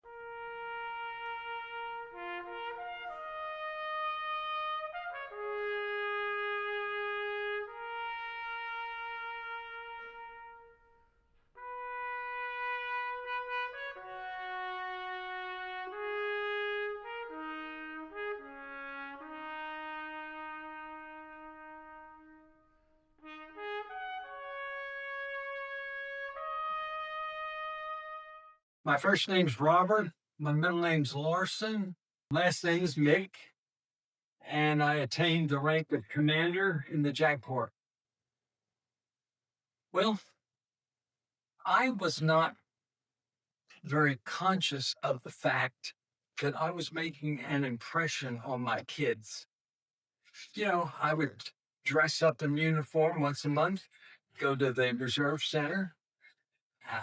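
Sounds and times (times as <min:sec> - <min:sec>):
slow solo instrument melody: 0:00.2 - 0:07.8.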